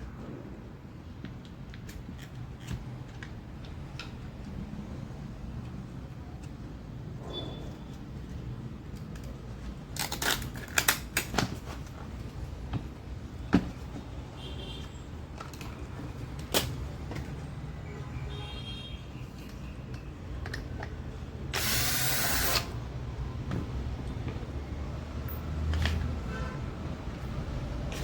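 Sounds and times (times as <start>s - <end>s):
tools and parts clicking and knocking: 1.2s - 4.6s, 7.7s - 12.0s, 15.3s - 17.4s, 19.3s - 22.8s.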